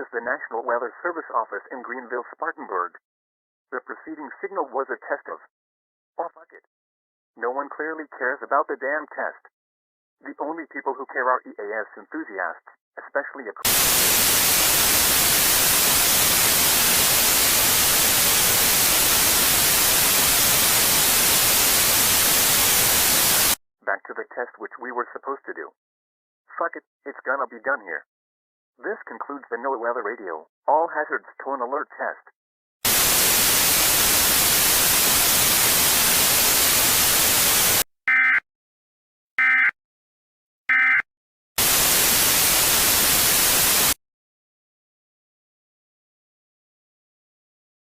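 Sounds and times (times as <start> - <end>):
short data bursts: 13.6 - 23.6, 32.8 - 38.4, 39.4 - 39.7, 40.7 - 41.0, 41.6 - 44.0
loud static: 13.7 - 23.6, 32.9 - 37.8, 41.6 - 44.0.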